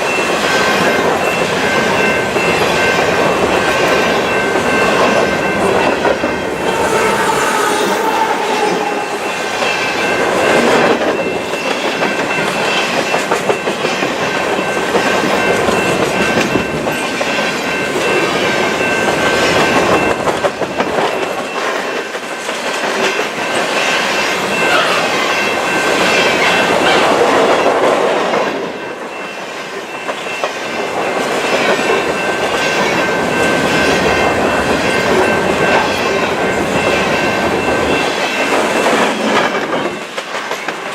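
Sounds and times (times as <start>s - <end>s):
train wheels clicking over rail joints: 30.0s - 40.9s.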